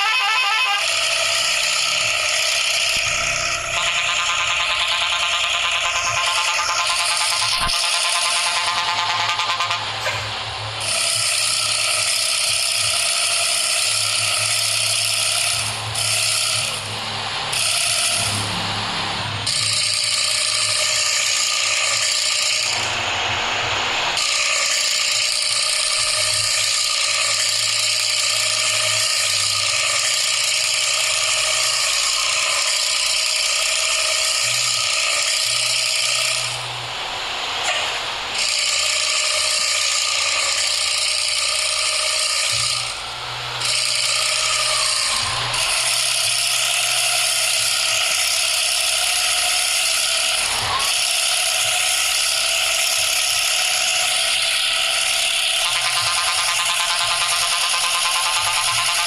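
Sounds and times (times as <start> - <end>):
diesel truck engine rattling: 0.0 - 13.8.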